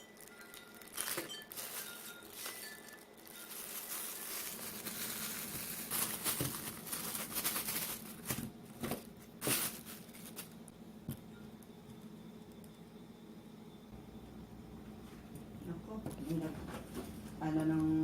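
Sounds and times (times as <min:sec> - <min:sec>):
packaging crinkling and rustling: 0:00.0 - 0:10.7.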